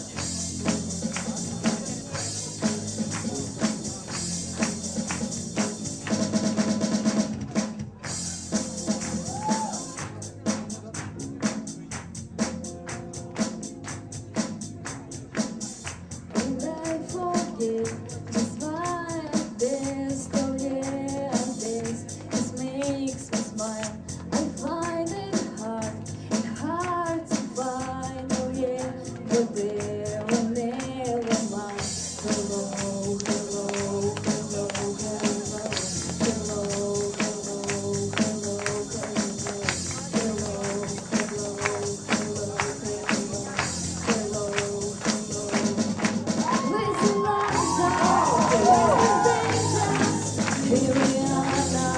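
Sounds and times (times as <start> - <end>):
quick percussion beat: 0.0 - 51.9
person singing: 16.3 - 51.9.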